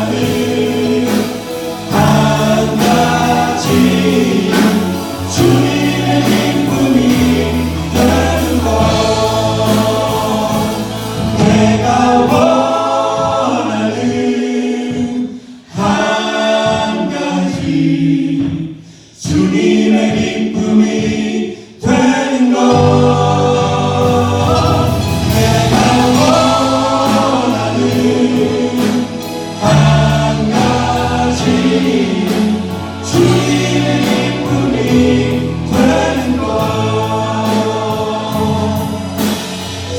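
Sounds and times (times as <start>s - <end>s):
group singing worship song: 0.0s - 39.9s.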